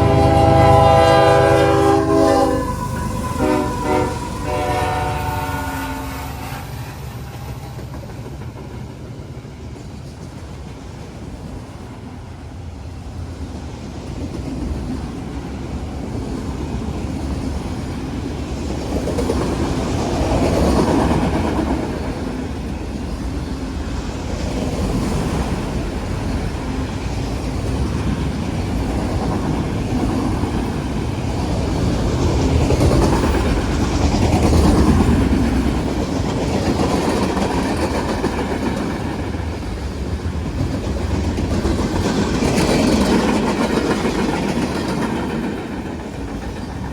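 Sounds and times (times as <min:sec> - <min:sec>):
train cars rumbling: 0:00.0 - 0:46.9
wheels clacking over rails: 0:27.6 - 0:46.9.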